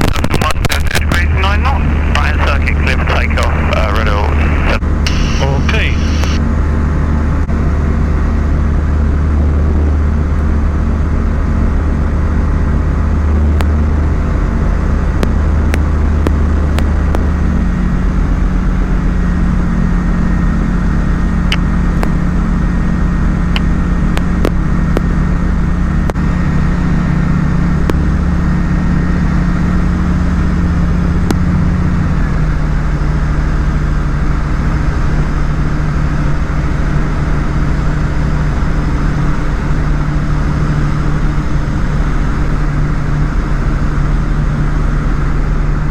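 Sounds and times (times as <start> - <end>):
light aircraft engine droning: 0.0 - 45.9.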